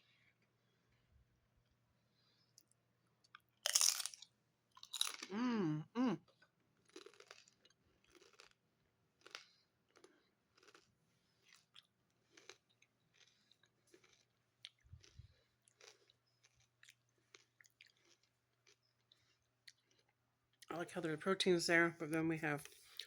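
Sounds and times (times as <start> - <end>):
chewing crunchy food: 2.5 - 5.4, 6.2 - 20.8.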